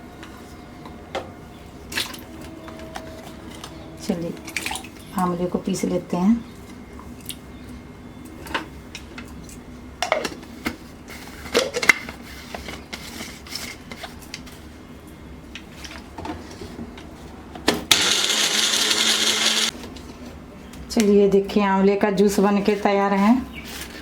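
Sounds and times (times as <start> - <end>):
electric mixer grinder running: 17.9 - 19.7.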